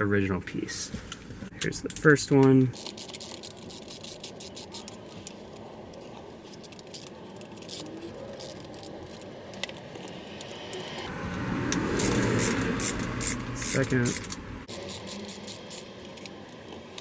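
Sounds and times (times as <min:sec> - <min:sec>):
rustling handling noise: 0:02.7 - 0:11.1
screwdriver metallic clicks: 0:06.5 - 0:11.1, 0:14.1 - 0:17.0.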